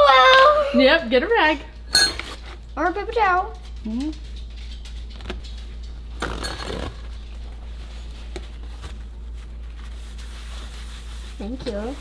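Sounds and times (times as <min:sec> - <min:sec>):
short rustling: 0:01.8 - 0:02.7, 0:05.6 - 0:12.0
dishes and utensils clinking: 0:01.9 - 0:02.6, 0:06.2 - 0:07.5.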